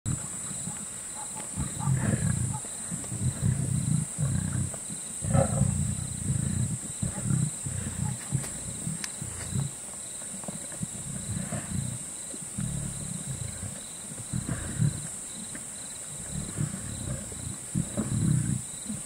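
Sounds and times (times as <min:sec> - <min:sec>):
lion roaring grunts: 0:01.5 - 0:09.7, 0:10.8 - 0:12.0, 0:12.6 - 0:15.2, 0:16.1 - 0:19.0.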